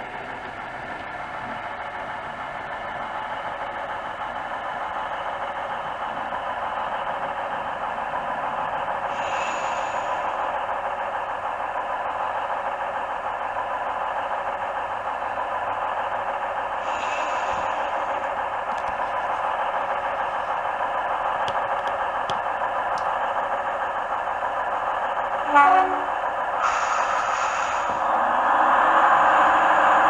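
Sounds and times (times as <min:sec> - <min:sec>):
model train engine sound from small speaker: 0:00.0 - 0:30.0.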